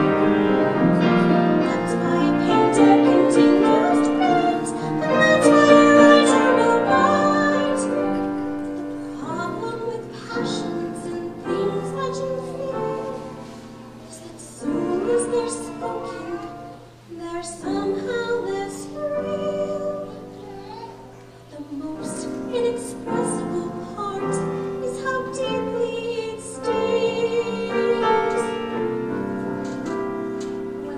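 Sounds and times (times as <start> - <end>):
woman singing operatically: 1.6 - 8.3, 9.2 - 13.3, 14.1 - 20.2, 21.5 - 28.6.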